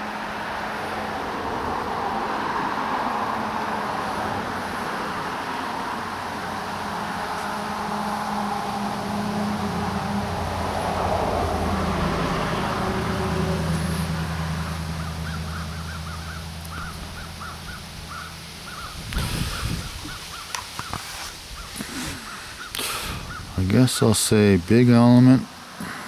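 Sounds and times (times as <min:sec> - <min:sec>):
passing vehicle engine hum: 0:00.0 - 0:26.0
bird chirping: 0:14.6 - 0:24.2.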